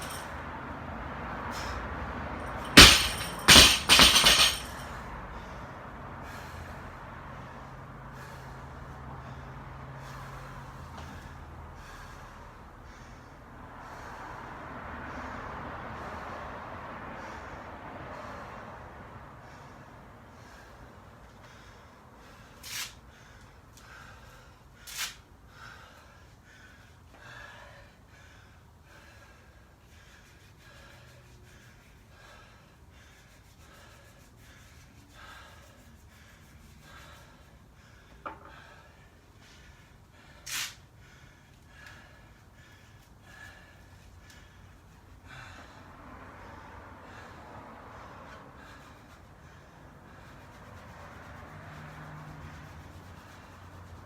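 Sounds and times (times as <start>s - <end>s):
person breathing hard: 0.0s - 54.0s
sharp forceful exhales: 1.3s - 3.4s, 21.5s - 29.2s, 30.0s - 50.3s
barbell crashing on floor: 2.6s - 4.8s
weight plates rattling: 2.6s - 4.8s
soft panting breaths: 5.1s - 54.0s.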